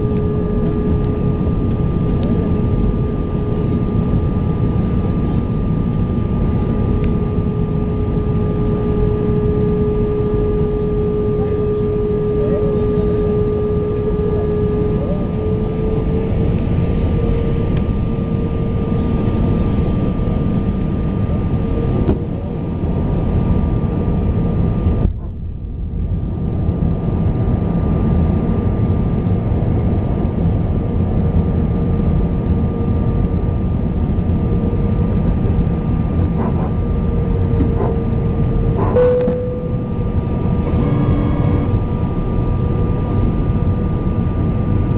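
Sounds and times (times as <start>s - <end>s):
aircraft engine drone: 0.0s - 44.9s
steady whine: 0.0s - 44.9s.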